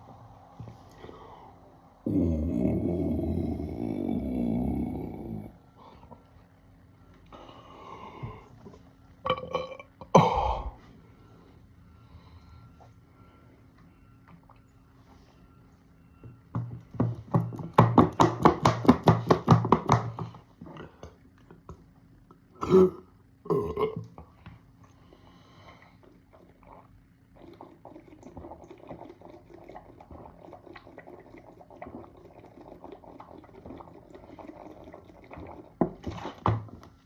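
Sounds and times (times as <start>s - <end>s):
man burping: 2.0s - 5.6s, 9.2s - 10.8s, 22.6s - 24.1s.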